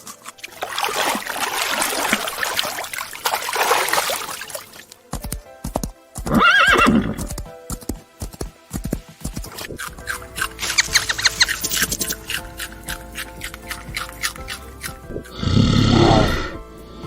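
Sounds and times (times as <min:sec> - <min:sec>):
background music: 0:00.0 - 0:17.0
hoof knocks: 0:05.0 - 0:15.8
horse whinnying: 0:06.3 - 0:07.3, 0:15.3 - 0:16.6.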